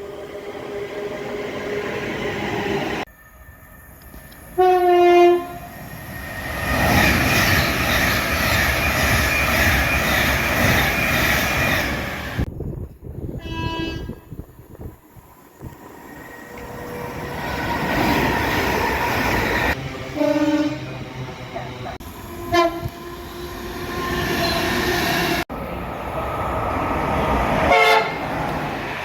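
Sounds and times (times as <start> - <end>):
passing train rushing noise: 0.0 - 29.0
train horn: 4.5 - 5.7, 13.4 - 14.2, 20.1 - 21.0, 22.4 - 23.0, 27.7 - 28.2.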